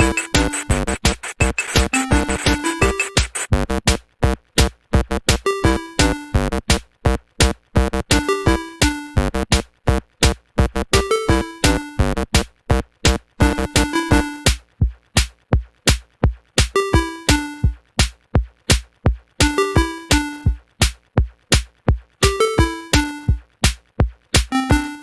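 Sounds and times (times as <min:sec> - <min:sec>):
clipped synth melody: 0:00.0 - 0:03.5
drum machine beat: 0:00.0 - 0:08.6, 0:09.2 - 0:25.0.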